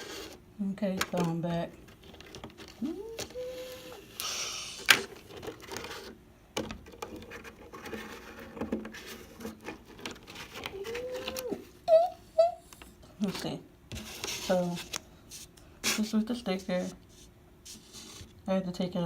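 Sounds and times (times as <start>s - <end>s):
person humming: 2.8s - 4.9s, 10.7s - 12.7s.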